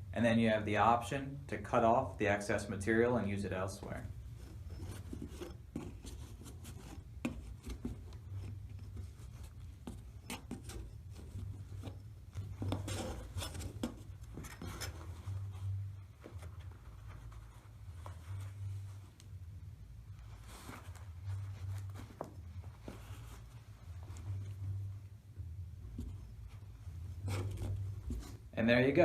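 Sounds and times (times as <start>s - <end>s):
steady low hum: 0.0s - 29.0s.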